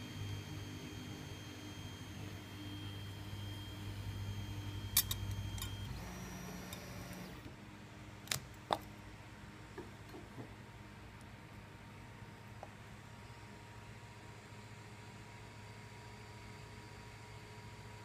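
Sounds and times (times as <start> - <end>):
small motor humming and whining: 0.0 - 7.5.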